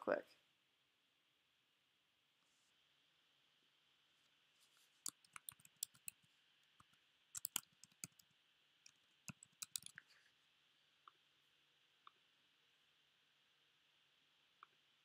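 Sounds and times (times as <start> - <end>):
computer mouse clicks: 5.0 - 6.2, 6.8 - 8.3, 8.9 - 10.0.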